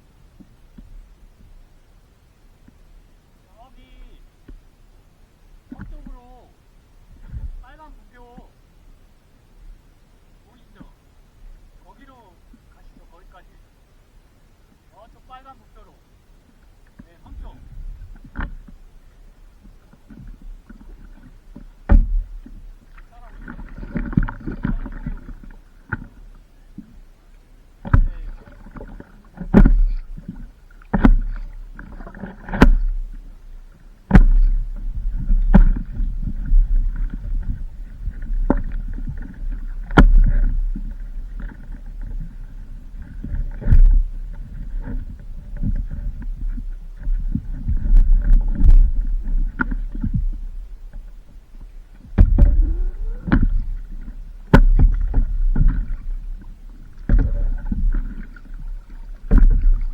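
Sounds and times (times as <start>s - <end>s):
wind rumble on microphone: 7.0s - 7.8s, 17.0s - 26.9s, 27.8s - 59.9s
water slapping around paddleboard: 16.6s - 59.9s
sharp knocks and slaps: 34.1s - 34.5s, 54.5s - 55.8s.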